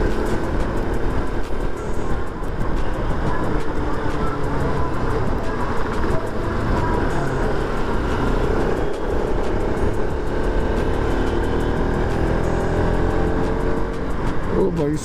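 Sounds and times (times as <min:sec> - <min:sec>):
motorcycle engine running: 0:00.0 - 0:15.0
road and wind noise: 0:00.0 - 0:15.0.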